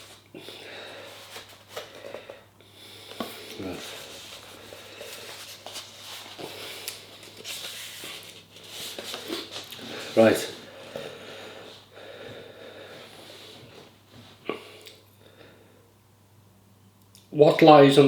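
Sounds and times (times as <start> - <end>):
book pages rustling: 3.2 - 10.3.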